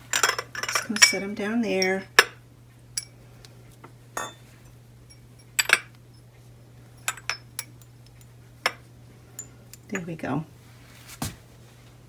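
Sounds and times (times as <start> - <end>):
small glass holders clinking: 0.1 - 2.4, 4.2 - 4.5, 5.1 - 5.9, 7.0 - 7.9.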